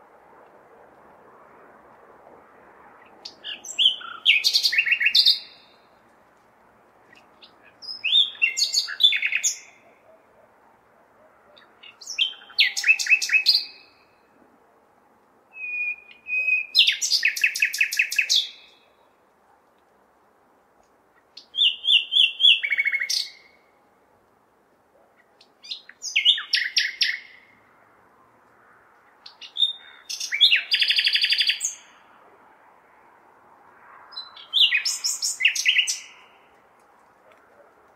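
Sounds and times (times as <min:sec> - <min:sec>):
faint city hum: 0:00.0 - 0:37.9
nightingale singing: 0:03.0 - 0:06.0, 0:07.1 - 0:10.4, 0:11.5 - 0:14.3, 0:15.5 - 0:19.2, 0:21.1 - 0:23.7, 0:25.2 - 0:27.5, 0:29.2 - 0:32.0, 0:34.1 - 0:36.5.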